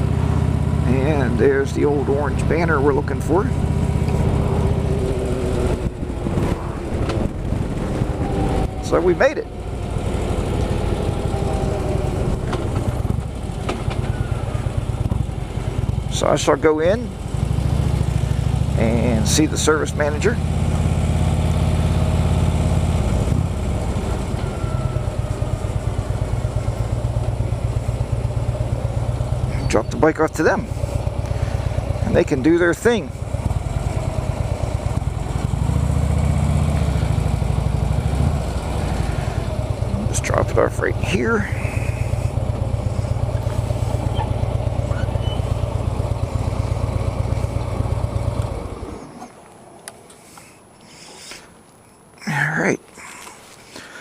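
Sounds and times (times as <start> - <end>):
motorcycle engine idling: 0.0 - 49.2.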